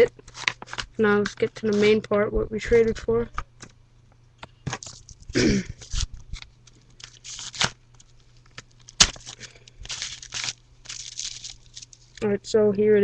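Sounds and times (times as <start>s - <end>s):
packaging rustling and tearing: 0.2s - 2.0s, 4.7s - 12.2s.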